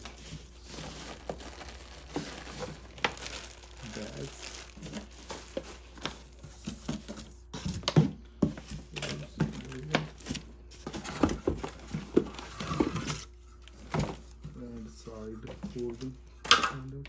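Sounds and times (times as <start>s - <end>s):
packaging rustling: 0.0s - 7.8s, 9.0s - 14.4s.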